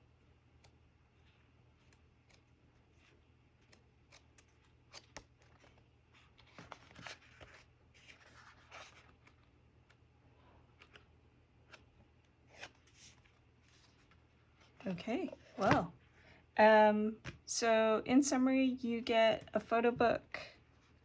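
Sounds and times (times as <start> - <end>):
pages being turned: 1.8 - 9.5, 12.5 - 14.3.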